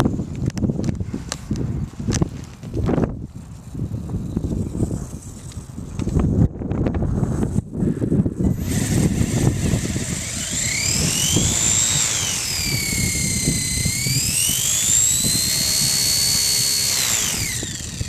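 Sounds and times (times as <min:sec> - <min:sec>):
wind buffeting microphone: 0:00.0 - 0:18.0
rc helicopter motor whining: 0:08.4 - 0:18.0.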